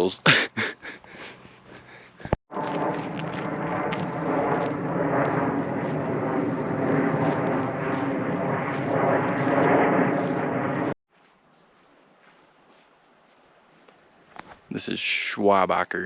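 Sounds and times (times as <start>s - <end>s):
loud engine drone: 2.6s - 11.0s.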